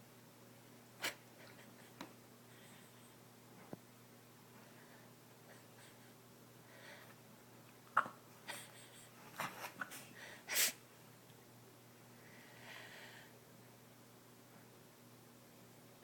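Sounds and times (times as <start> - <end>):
faint breath: 6.6 - 7.2, 10.0 - 10.7, 12.2 - 13.4
person sneezing: 9.6 - 10.8.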